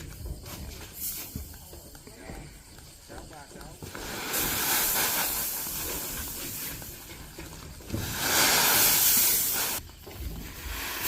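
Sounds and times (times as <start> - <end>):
loud hissing rush: 3.7 - 11.0.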